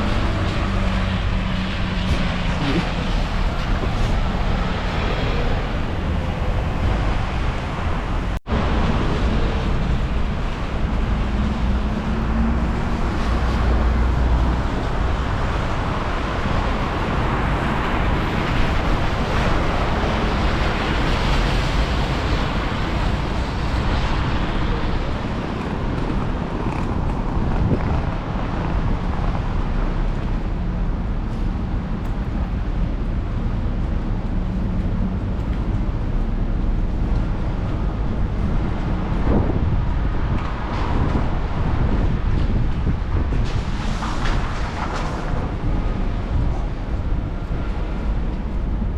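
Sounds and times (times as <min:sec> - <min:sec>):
road traffic rumble: 0:00.0 - 0:48.9
wind buffeting microphone: 0:00.0 - 0:48.9.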